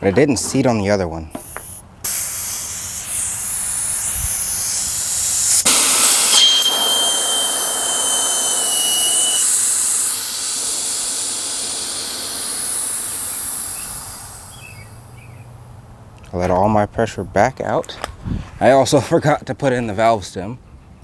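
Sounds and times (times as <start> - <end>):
air hissing out of tire: 1.3 - 15.2
thin whistle: 1.4 - 15.5.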